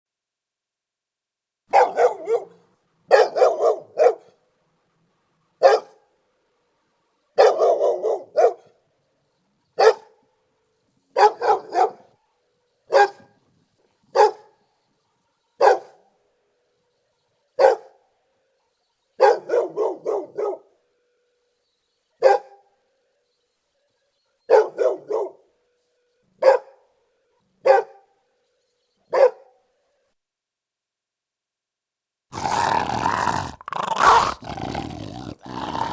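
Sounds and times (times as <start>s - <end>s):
dog barking: 1.7s - 4.4s, 5.6s - 6.1s, 7.4s - 8.8s, 9.8s - 10.2s, 11.1s - 12.1s, 12.9s - 13.4s, 14.1s - 14.6s, 15.6s - 16.1s, 17.6s - 18.0s, 19.2s - 20.8s, 22.2s - 22.7s, 24.5s - 25.5s, 26.4s - 26.9s, 27.6s - 28.2s, 29.1s - 29.6s, 32.3s - 35.9s.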